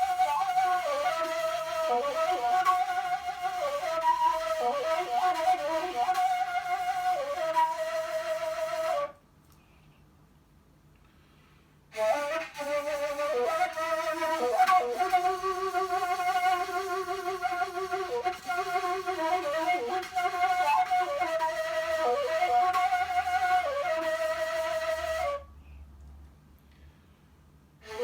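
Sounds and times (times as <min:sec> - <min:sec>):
end-blown wooden flute melody: 0:00.0 - 0:09.2, 0:11.9 - 0:25.5.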